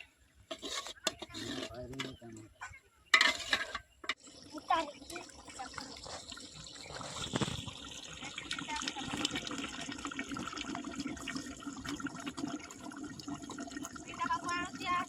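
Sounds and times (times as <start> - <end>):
watery noise with pops and crackles: 3.2 - 15.0.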